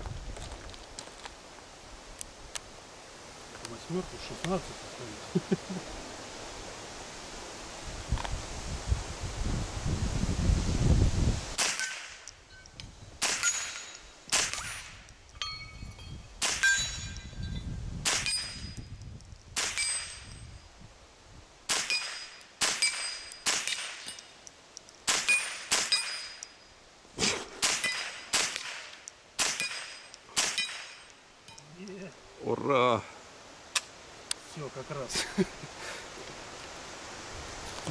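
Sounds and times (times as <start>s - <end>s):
gunshots: 11.6s - 12.2s, 13.2s - 14.9s, 21.7s - 24.1s, 25.1s - 26.1s, 27.6s - 31.0s.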